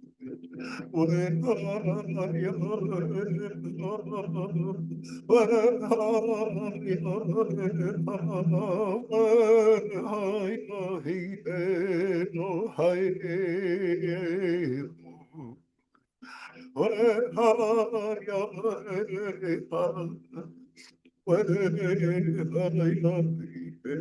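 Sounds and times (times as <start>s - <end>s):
person singing long held notes: 0.2s - 15.5s.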